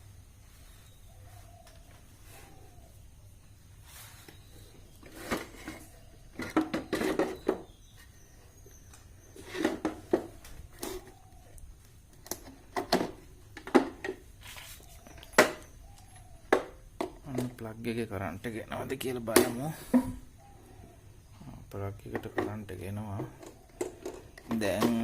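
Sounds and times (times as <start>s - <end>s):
objects being handled: 3.8s - 17.6s, 22.0s - 25.0s.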